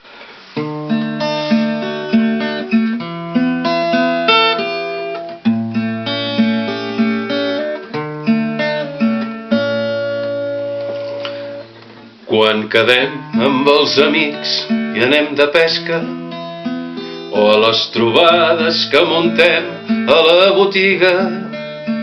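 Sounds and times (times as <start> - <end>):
acoustic guitar picking: 0.0 - 22.0.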